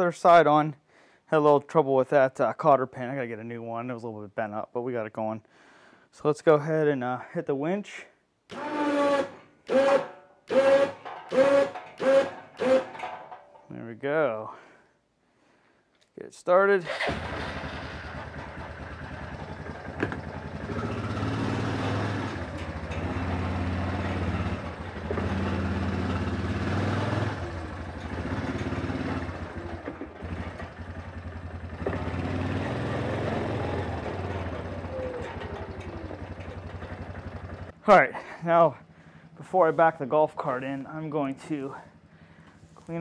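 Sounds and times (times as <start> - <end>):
quad bike engine revving: 8.5 - 13.2, 16.8 - 37.8.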